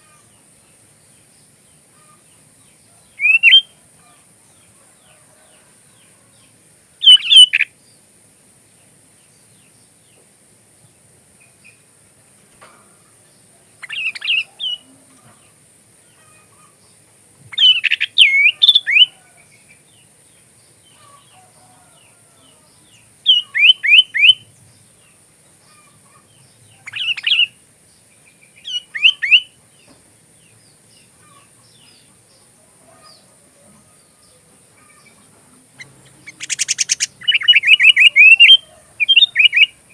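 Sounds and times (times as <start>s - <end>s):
bird whistling song: 3.1s - 3.7s, 7.0s - 7.7s, 13.8s - 14.9s, 17.5s - 19.2s, 23.3s - 24.5s, 26.8s - 27.6s, 28.6s - 29.6s, 35.8s - 39.8s.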